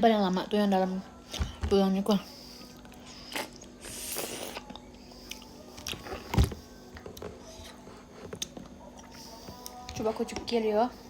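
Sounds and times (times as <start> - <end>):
wet chewing and sucking: 2.8 - 6.3.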